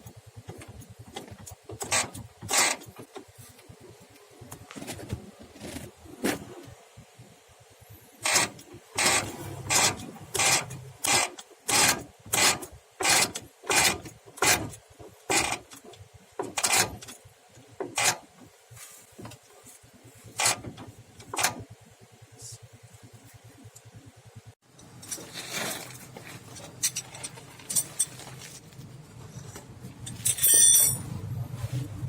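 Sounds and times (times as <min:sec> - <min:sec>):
hand tool scraping: 0:00.6 - 0:03.6, 0:08.2 - 0:17.2, 0:17.8 - 0:21.6, 0:24.8 - 0:32.0.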